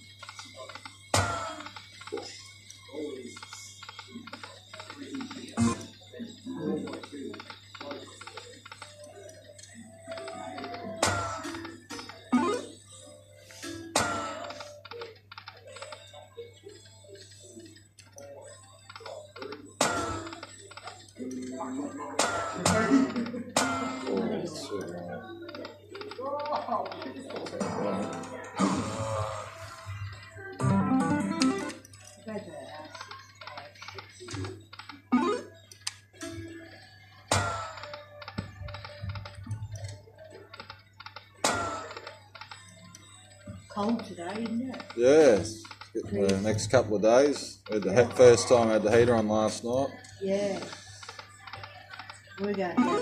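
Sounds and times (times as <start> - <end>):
poker machine ticks and tones: 30.3 - 32.0, 50.1 - 53.0.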